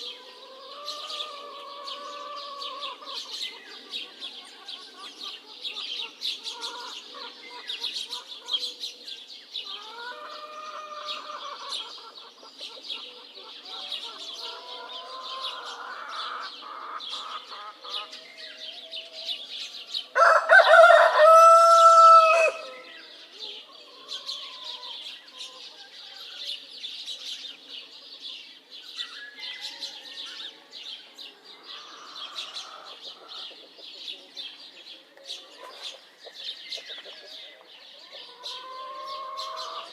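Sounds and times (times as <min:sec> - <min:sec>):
small birds chirping: 0:00.0 - 0:39.9
rooster crowing: 0:20.2 - 0:22.9.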